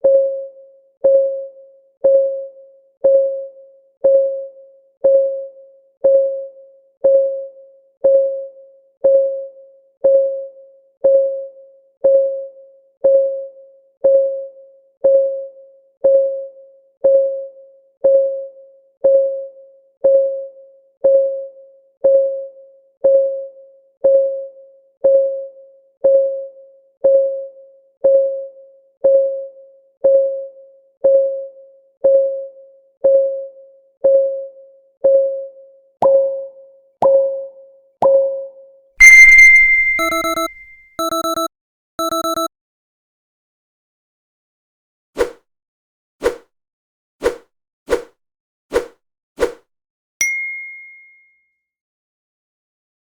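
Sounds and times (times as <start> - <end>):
clock ticking: 39.0 - 42.5.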